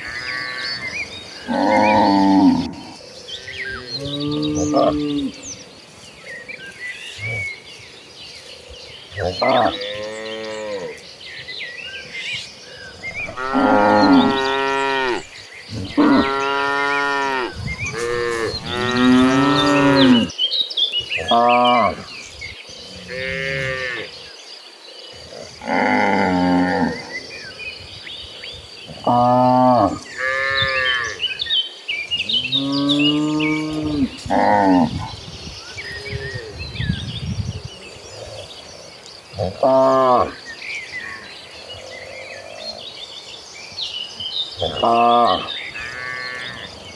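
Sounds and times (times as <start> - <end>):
birds chirping: 0.0 - 46.9
cattle mooing: 1.5 - 2.9, 13.1 - 20.3.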